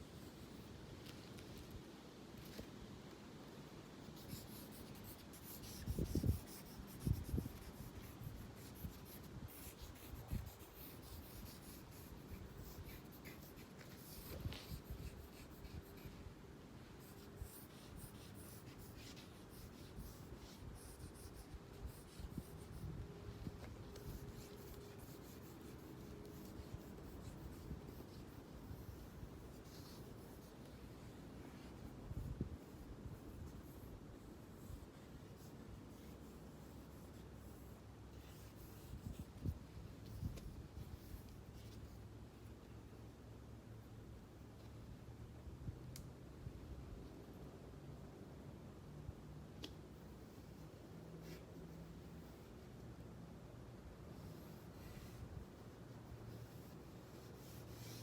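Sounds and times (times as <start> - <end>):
drawing tool scratching on paper: 4.2 - 16.2, 17.0 - 22.9, 23.6 - 30.8, 34.6 - 39.3, 54.2 - 58.0.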